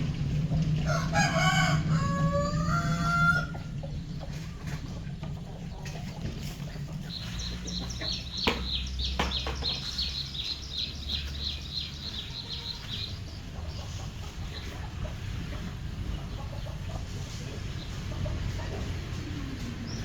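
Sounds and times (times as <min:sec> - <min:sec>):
chick peeping: 0:01.6 - 0:20.0
sharp knocks: 0:08.4 - 0:09.9.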